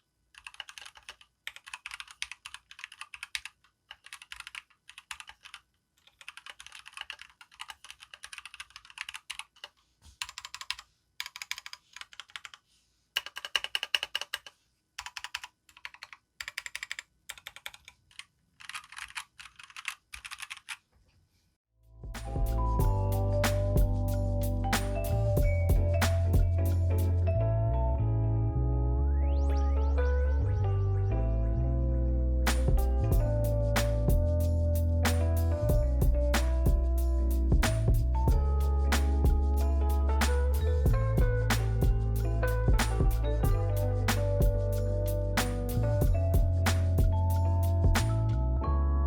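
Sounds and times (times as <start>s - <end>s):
mechanical keyboard key clacks: 13.2s - 20.8s
loud music: 22.0s - 27.2s.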